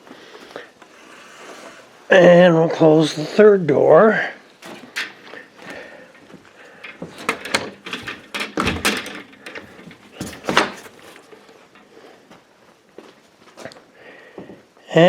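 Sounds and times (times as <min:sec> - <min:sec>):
door handle clicks: 0:06.8 - 0:10.8
door closing knocks: 0:07.0 - 0:10.9.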